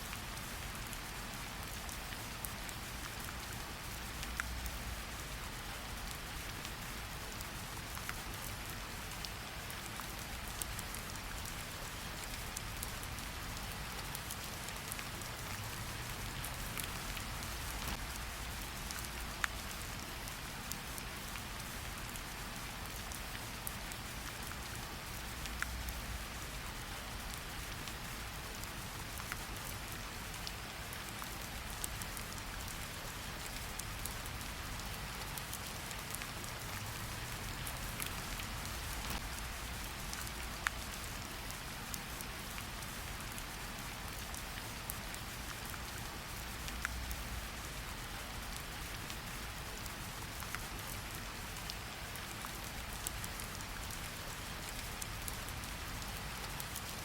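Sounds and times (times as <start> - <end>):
rain hiss: 0.0 - 57.0
wood fire crackling: 37.0 - 41.0.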